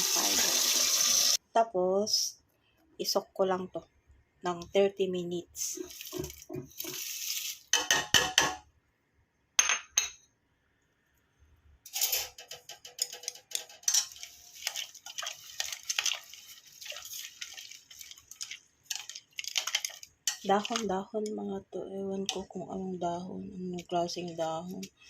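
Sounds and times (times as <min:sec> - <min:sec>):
pot and utensils clinking: 0:11.9 - 0:20.9
herbs rustling: 0:14.0 - 0:20.8.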